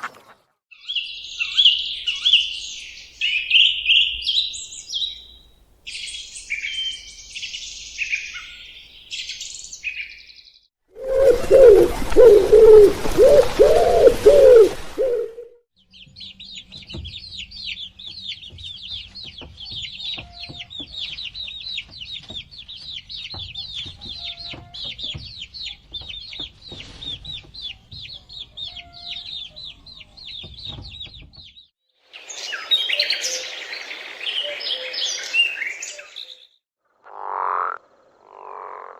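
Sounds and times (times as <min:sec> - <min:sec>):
bird chirps and twittering: 0:00.7 - 0:10.7, 0:15.8 - 0:36.6
low wavering animal call: 0:11.0 - 0:15.6.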